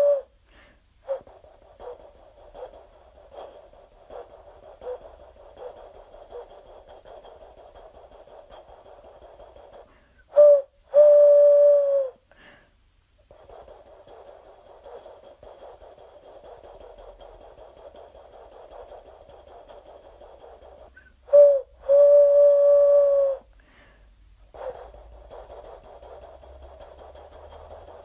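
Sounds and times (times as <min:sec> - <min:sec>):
person vocal whistle toots: 0:21.0 - 0:23.5.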